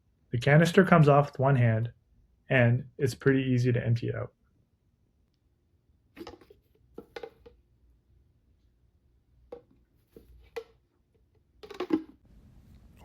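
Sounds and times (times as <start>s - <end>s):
plastic clicks and knocks: 6.2s - 7.6s, 9.5s - 12.2s.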